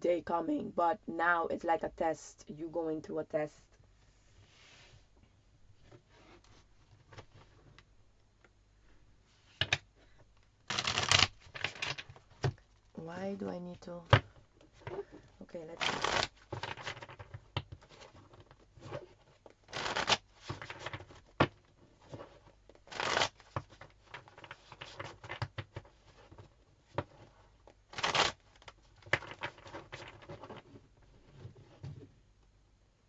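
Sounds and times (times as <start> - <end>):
cards tapping and rustling: 9.6 - 12.8, 14.0 - 32.0
cards riffling: 10.7 - 12.6.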